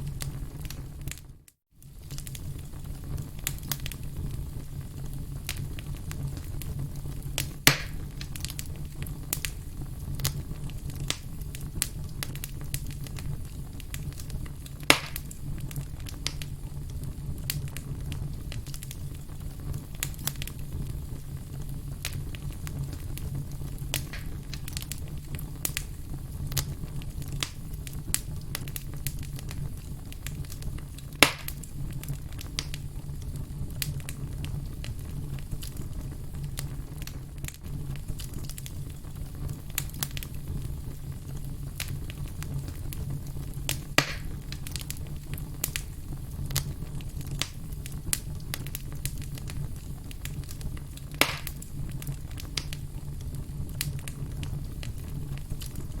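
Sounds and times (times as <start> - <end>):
campfire crackling: 0.0 - 56.0
low rush of flames: 0.0 - 56.0
sharp loud fire pops: 7.4 - 8.1, 14.8 - 15.4, 23.9 - 24.7, 31.2 - 31.6, 43.9 - 44.4, 51.1 - 51.6.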